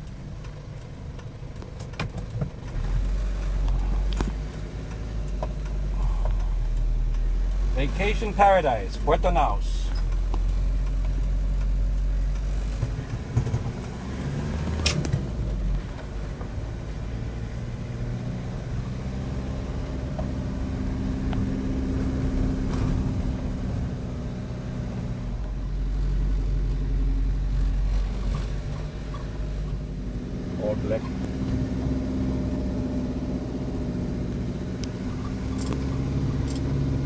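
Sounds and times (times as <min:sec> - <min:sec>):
car engine hum: 0:00.0 - 0:37.0
road rumble: 0:00.0 - 0:37.0
sharp click: 0:14.7 - 0:15.2, 0:34.8 - 0:36.7.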